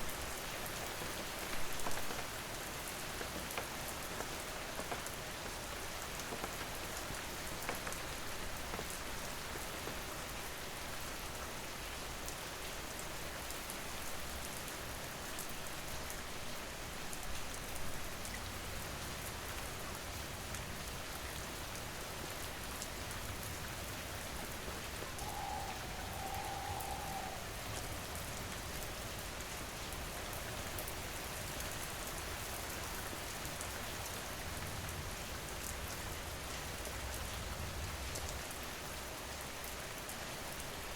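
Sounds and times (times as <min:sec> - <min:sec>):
steady rain falling: 0:00.0 - 0:40.9
faint steady tone: 0:25.1 - 0:29.0.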